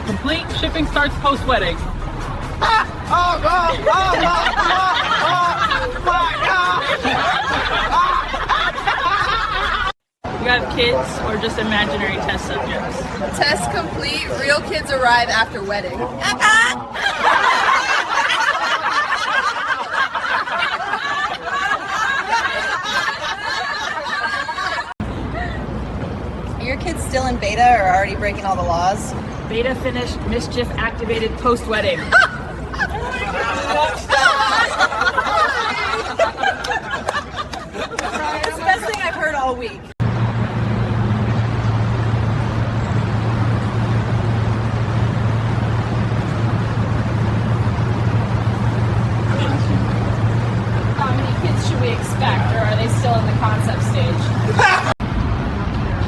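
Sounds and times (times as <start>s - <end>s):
noisy rumble: 0.0s - 56.0s
people laughing and snickering: 2.3s - 10.0s, 15.9s - 25.8s, 31.6s - 39.3s, 48.6s - 55.0s.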